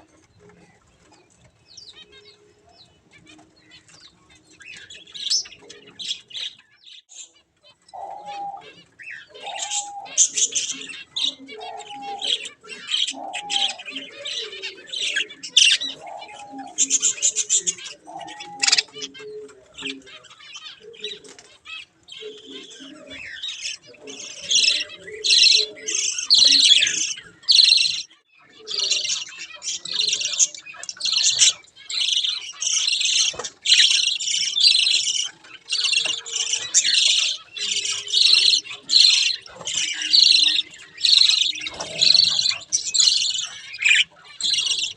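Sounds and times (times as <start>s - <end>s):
budgerigars chattering: 1.7s - 44.9s.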